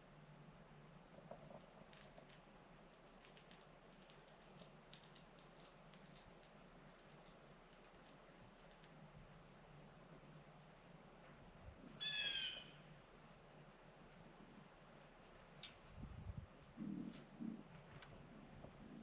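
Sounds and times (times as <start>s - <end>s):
faint low hum: 0.0s - 19.0s
squirrel gnawing clicks: 1.4s - 9.6s, 14.1s - 15.8s.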